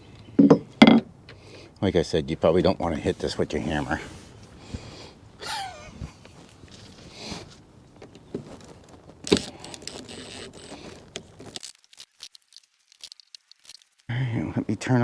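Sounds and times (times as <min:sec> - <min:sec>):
knocks and rattles: 0:00.4 - 0:01.1.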